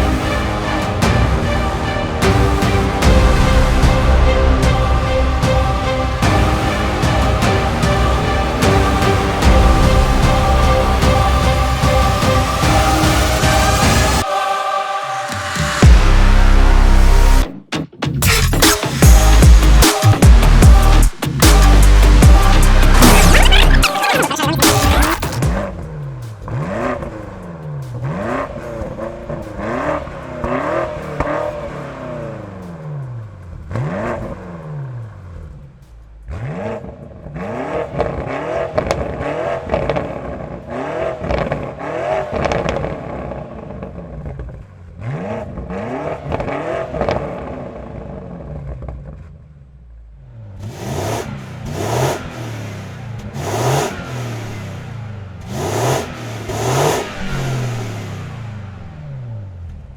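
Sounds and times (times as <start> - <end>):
car exhaust revving: 18.6 - 59.9.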